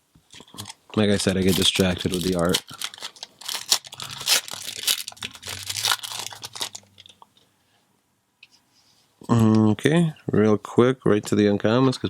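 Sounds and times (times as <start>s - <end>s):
foil wrapper tearing and crinkling: 0.6s - 7.2s.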